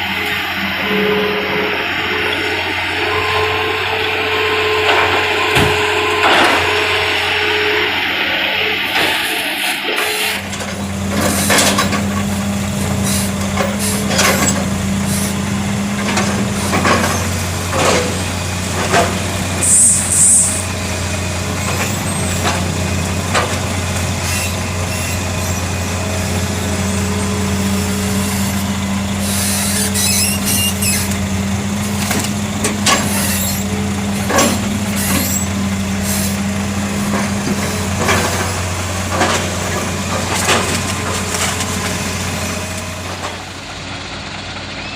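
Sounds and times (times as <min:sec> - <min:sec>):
heavy diesel engines running: 0:00.0 - 0:44.9
knocks and clanks: 0:04.8 - 0:06.8, 0:10.4 - 0:19.5, 0:29.7 - 0:43.5
air hisses: 0:19.6 - 0:20.7.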